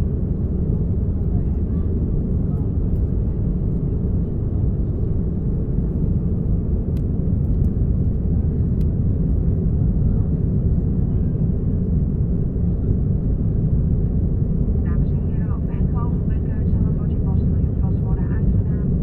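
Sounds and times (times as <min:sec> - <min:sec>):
airplane engines rumbling: 0:00.0 - 0:19.0.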